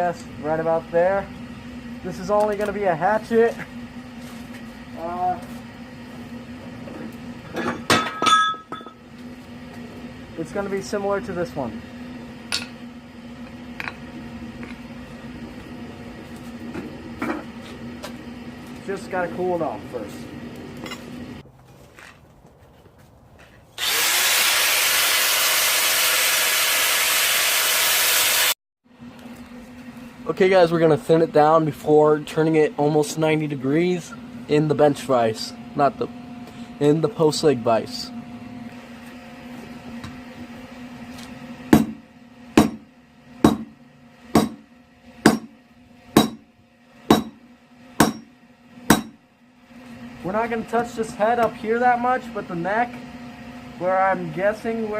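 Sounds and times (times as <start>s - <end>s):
angle grinder cutting steel: 23.8s - 28.6s
hammer striking steel on anvil: 41.8s - 42.0s, 42.6s - 42.8s, 43.4s - 43.7s, 44.4s - 44.6s, 45.2s - 45.6s, 46.2s - 46.5s, 47.1s - 47.4s, 48.0s - 48.3s, 48.9s - 49.2s.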